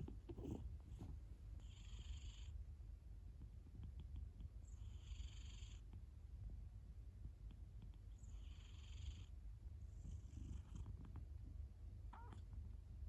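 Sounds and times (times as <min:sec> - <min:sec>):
cat snoring softly: 0:00.0 - 0:01.0, 0:01.6 - 0:02.6, 0:04.6 - 0:06.0, 0:07.8 - 0:11.2
cat purring: 0:00.0 - 0:02.6, 0:03.6 - 0:06.0, 0:07.5 - 0:12.5.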